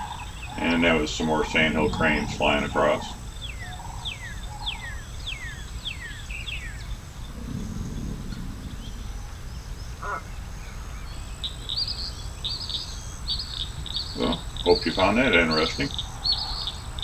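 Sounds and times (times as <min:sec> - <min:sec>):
low outdoor background noise: 0:00.0 - 0:17.0
low rumble: 0:00.6 - 0:03.8, 0:06.8 - 0:11.4.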